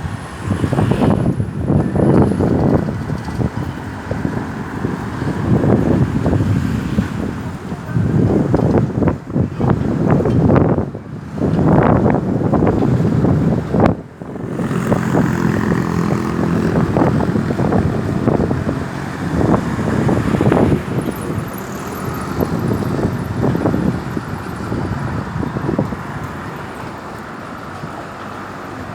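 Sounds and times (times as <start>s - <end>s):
road traffic rumble: 0.0s - 28.9s.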